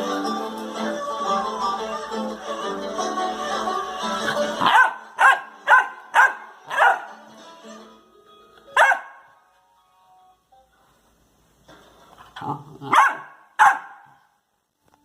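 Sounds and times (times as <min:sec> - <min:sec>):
background music: 0:00.0 - 0:10.7
dog barking: 0:04.6 - 0:07.2, 0:08.8 - 0:09.3, 0:12.9 - 0:14.2.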